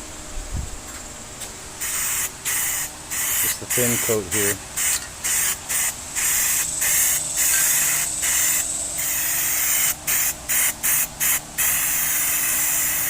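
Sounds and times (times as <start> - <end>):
paint spray hissing bursts: 1.8 - 13.0.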